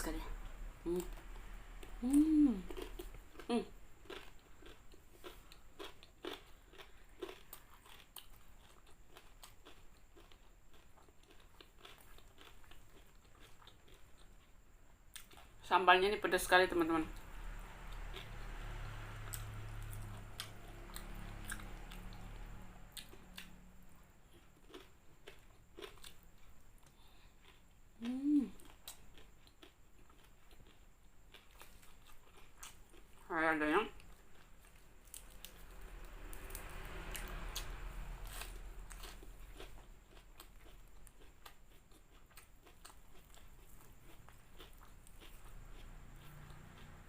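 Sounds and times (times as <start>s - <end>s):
person chewing crispy chicken: 2.0s - 15.4s, 24.2s - 33.2s, 34.0s - 47.0s.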